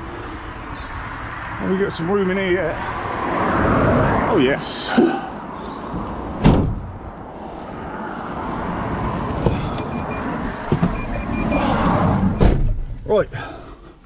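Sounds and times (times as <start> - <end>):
van door slamming shut: 6.4 - 6.9, 12.2 - 12.9
faint beeping: 9.5 - 12.0.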